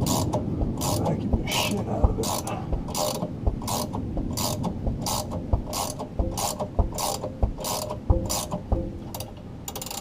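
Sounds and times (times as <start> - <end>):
hand ratchet clicking: 0.0 - 1.2, 2.2 - 10.0.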